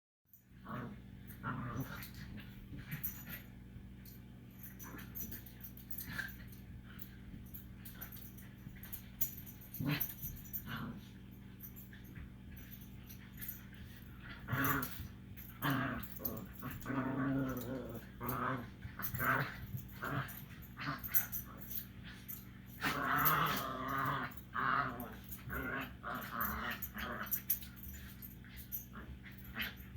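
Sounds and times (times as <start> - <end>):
dog growling and whining: 0.6 - 3.4, 13.0 - 29.9.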